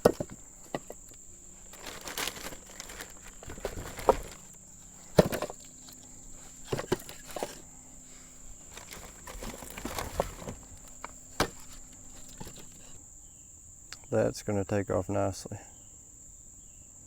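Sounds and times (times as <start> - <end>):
firewood knocking and snapping: 0.0 - 6.0, 6.6 - 7.6, 8.7 - 13.0
crickets chirring: 0.0 - 17.0.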